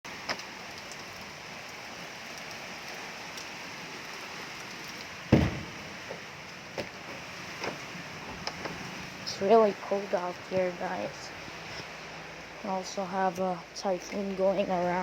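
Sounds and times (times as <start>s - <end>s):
heavy rain falling: 0.0s - 15.0s
loud thump: 5.3s - 5.9s.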